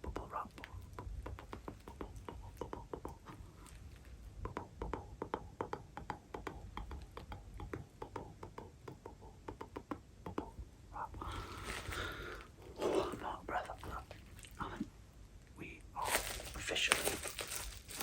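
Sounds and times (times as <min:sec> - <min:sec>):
plastic crinkling: 0:11.3 - 0:14.9, 0:16.0 - 0:18.0
bubble wrap popping: 0:16.0 - 0:18.0.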